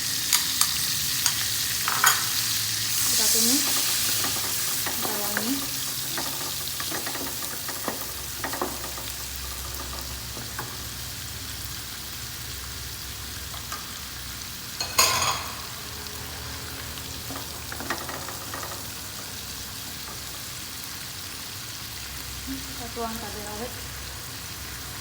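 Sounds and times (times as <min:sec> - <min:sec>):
shallots sizzling in butter: 0:00.0 - 0:25.0
utensil tapping pan: 0:03.5 - 0:10.8, 0:17.2 - 0:20.4
utensil clatter: 0:17.2 - 0:19.3.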